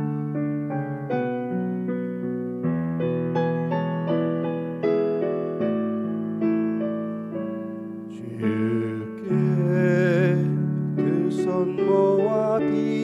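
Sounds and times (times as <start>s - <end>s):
electric piano playing hymn chords: 0.0s - 13.0s
held melody with vibrato: 3.3s - 13.0s.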